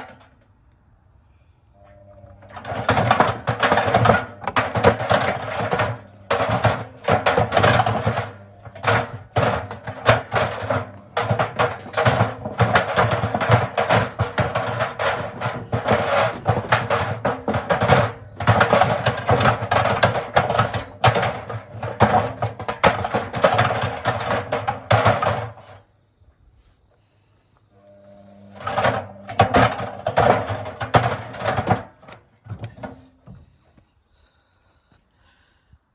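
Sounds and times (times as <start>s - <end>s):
washing machine knocking and clattering: 2.4s - 25.7s, 28.6s - 33.4s.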